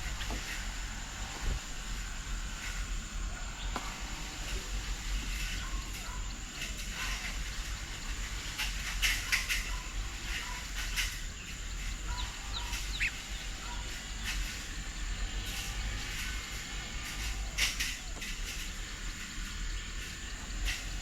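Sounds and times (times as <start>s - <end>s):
birds chirping: 3.0s - 8.4s, 9.1s - 21.0s
sliding bird whistles: 12.1s - 13.9s.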